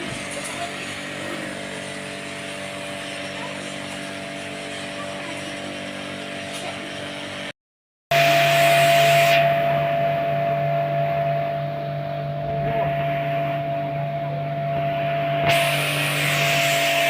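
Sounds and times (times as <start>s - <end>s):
mechanical hum with hiss: 0.0s - 7.5s, 8.1s - 17.0s
strong steady tone: 8.1s - 17.0s.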